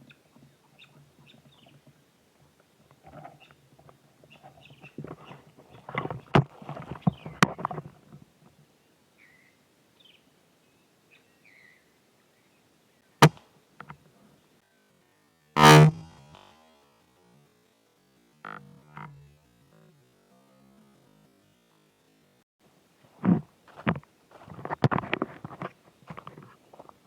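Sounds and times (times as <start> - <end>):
rustling handling noise: 2.6 - 8.3, 23.0 - 27.0.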